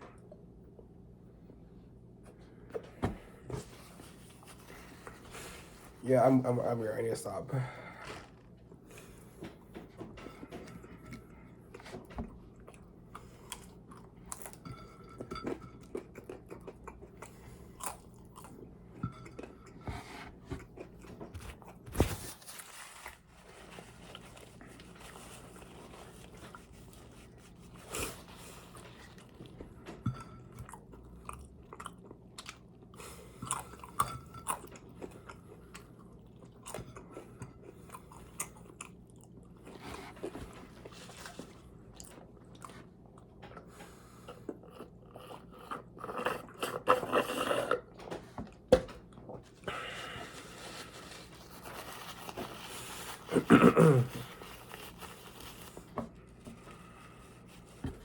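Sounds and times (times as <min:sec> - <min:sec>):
person chewing crunchy food: 0:15.4 - 0:21.8, 0:30.5 - 0:43.4.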